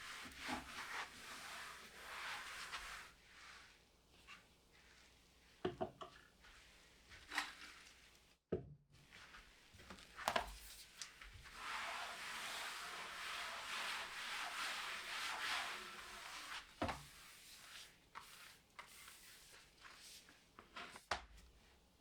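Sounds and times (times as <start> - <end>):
rubbing across a surface: 0.0 - 3.7, 10.5 - 21.0.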